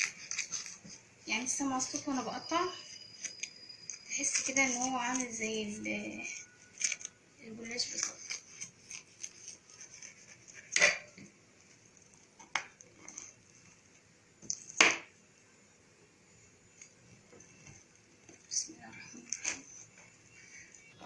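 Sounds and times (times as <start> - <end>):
knife crunching through crisp pastry: 0.0 - 1.1, 2.8 - 14.8.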